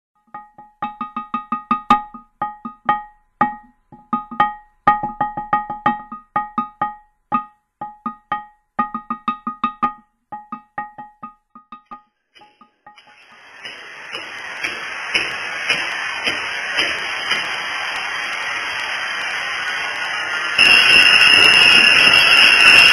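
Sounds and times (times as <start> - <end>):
struck stone ringing: 0.2 - 13.2.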